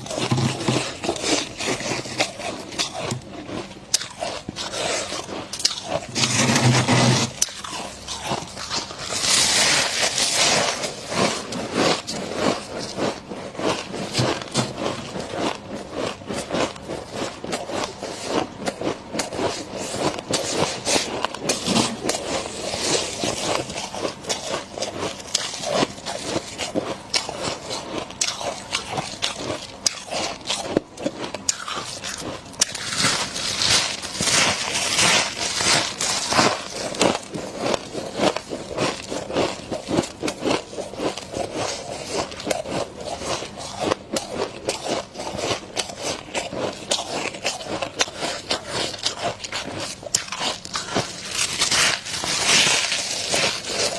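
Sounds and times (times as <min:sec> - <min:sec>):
frost being chewed: 0:00.0 - 0:53.9.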